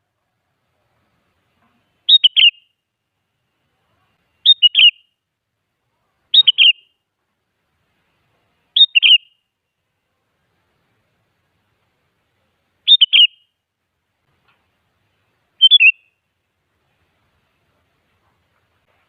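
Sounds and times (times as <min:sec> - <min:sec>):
bulbul singing: 0:02.0 - 0:02.8, 0:04.4 - 0:05.2, 0:06.3 - 0:07.0, 0:08.7 - 0:09.5, 0:12.8 - 0:13.6, 0:15.6 - 0:16.3.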